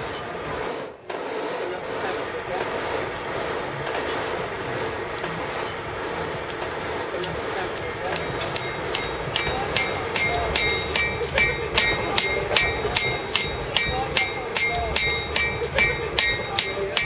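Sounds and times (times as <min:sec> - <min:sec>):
hammer striking metal on anvil: 0:07.3 - 0:17.0.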